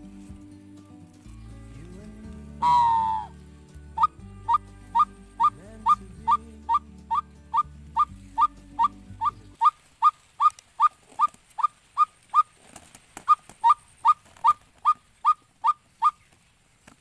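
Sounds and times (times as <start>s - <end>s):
bird call lure hoots: 2.6s - 3.3s, 4.0s - 12.5s, 13.3s - 16.3s.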